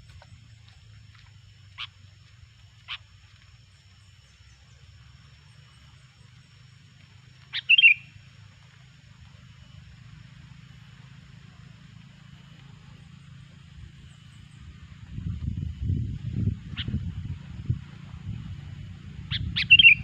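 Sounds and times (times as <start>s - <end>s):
faint low hum: 0.0s - 20.0s
bird calling: 2.8s - 3.1s, 7.4s - 8.2s, 19.3s - 20.0s.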